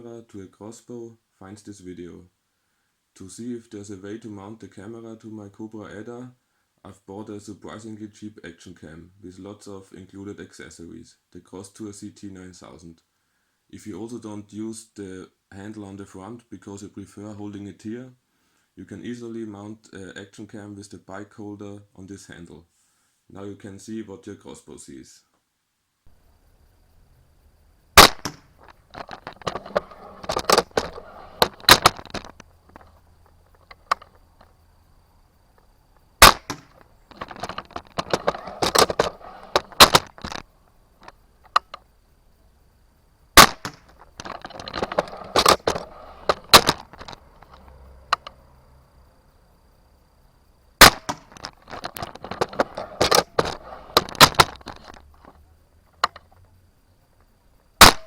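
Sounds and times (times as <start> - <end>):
crossbow recocking clacks: 36.2 - 40.4, 43.4 - 48.3, 50.8 - 55.0.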